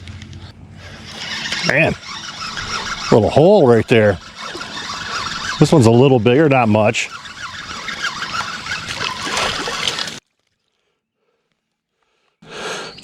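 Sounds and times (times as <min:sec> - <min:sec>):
water splashing and trickling: 0:03.7 - 0:11.8.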